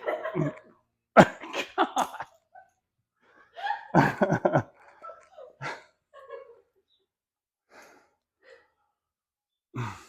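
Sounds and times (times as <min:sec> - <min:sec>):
breathy exhalations: 0:09.8 - 0:10.0.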